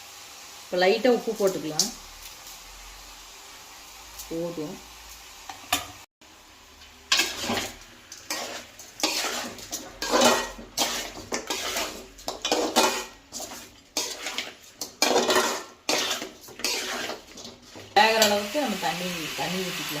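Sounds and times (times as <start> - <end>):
spoon scraping a pan: 7.1 - 18.6.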